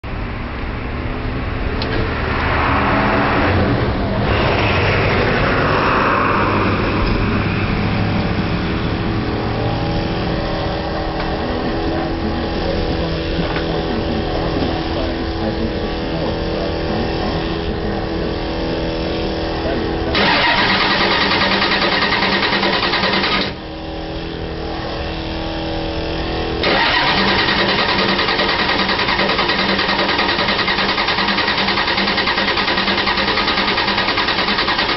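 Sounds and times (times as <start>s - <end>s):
cold engine cranking and sputtering: 19.1s - 23.8s, 24.6s - 34.9s.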